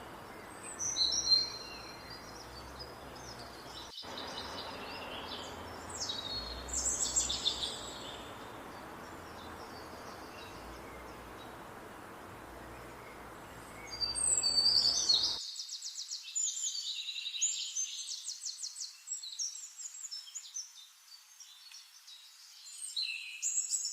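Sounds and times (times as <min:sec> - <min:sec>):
steady background hiss: 0:00.0 - 0:16.6
songbirds singing: 0:00.0 - 0:23.9.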